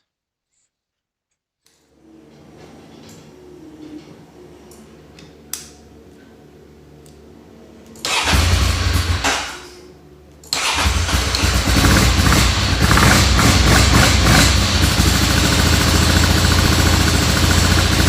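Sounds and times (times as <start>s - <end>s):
motorcycle engine running: 11.0s - 18.0s.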